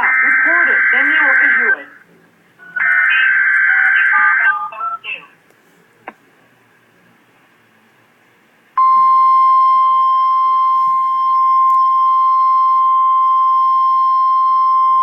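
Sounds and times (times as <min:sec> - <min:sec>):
steady loud alarm tone: 0:00.0 - 0:01.8.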